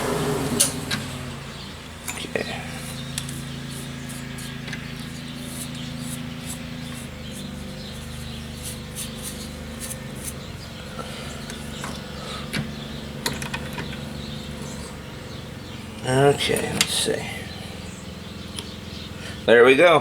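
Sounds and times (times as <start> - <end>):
light clicks and scrapes: 2.0 - 10.5.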